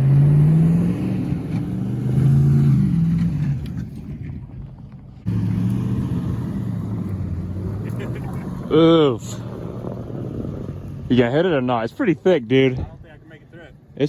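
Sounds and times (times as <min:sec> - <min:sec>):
car engine revving: 0:00.0 - 0:04.1, 0:05.3 - 0:12.1.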